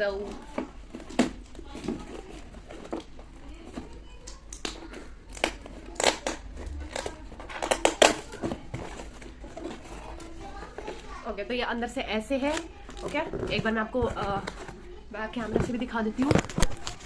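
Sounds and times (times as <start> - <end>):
packing tape ripping and crinkling: 0.2 - 11.0, 15.5 - 17.0.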